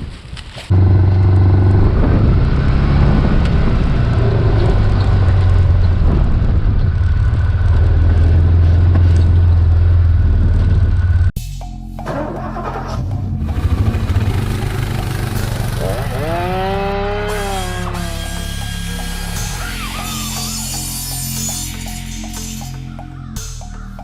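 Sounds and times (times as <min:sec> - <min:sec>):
small petrol engine running: 0:13.4 - 0:21.0.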